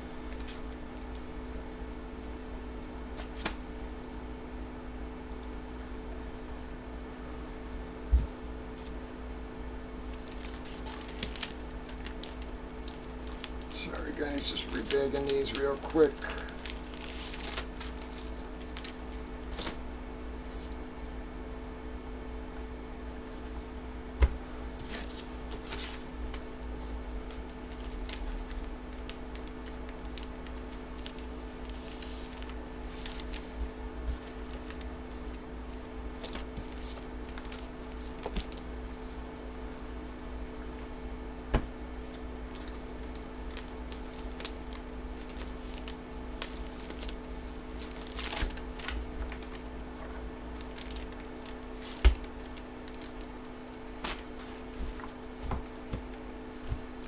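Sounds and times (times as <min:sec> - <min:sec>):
steady low hum: 0:00.0 - 0:57.0
plastic bags crinkling: 0:10.0 - 0:19.9, 0:24.8 - 0:38.7, 0:41.8 - 0:57.0.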